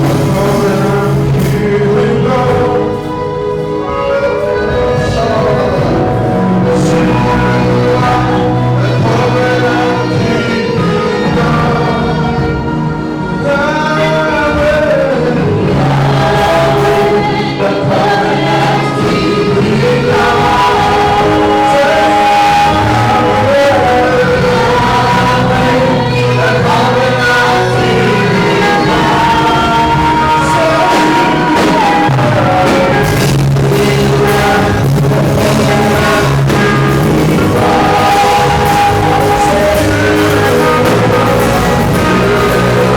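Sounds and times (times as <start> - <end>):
gospel singers with band: 0.0 - 42.9
steady bass: 0.0 - 42.9.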